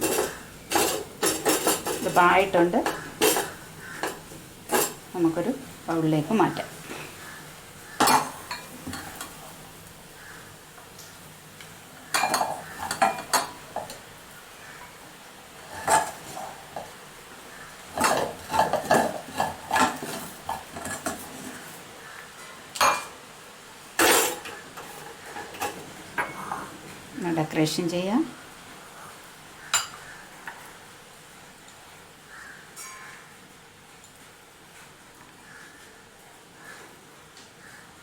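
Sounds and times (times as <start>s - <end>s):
spoon scraping and clinking on pan: 0.0s - 5.1s, 6.5s - 9.4s, 12.1s - 14.0s, 15.7s - 16.9s, 18.0s - 21.7s, 24.0s - 26.7s, 32.8s - 33.3s.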